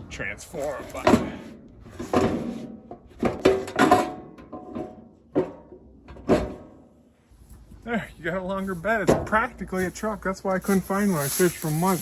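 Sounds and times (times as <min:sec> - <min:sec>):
metal panels clanking and knocking: 0:01.0 - 0:06.9.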